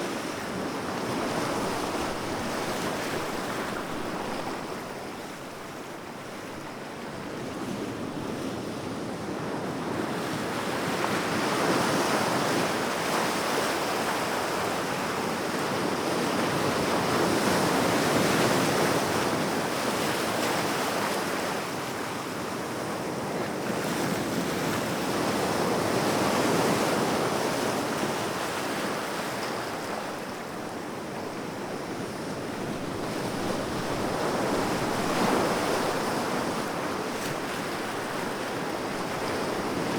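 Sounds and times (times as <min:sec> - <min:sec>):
sea waves breaking on shore: 0:23.6 - 0:39.9.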